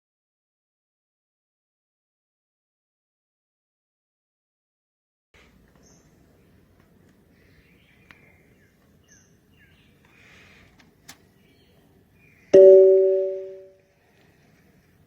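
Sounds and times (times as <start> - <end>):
loud two-pitch ringing tone: 12.6 - 13.8.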